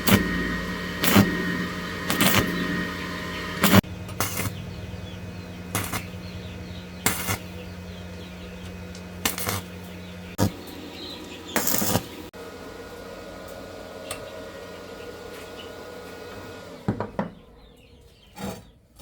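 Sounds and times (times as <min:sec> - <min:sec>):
steady low hum: 0:00.0 - 0:13.8.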